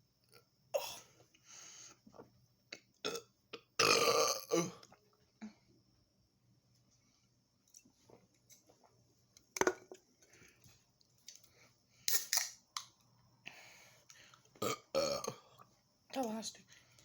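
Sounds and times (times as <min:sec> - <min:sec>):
man burping: 0:03.0 - 0:04.9, 0:14.6 - 0:15.4
cans clicking and clanking: 0:09.4 - 0:10.4, 0:12.1 - 0:13.0.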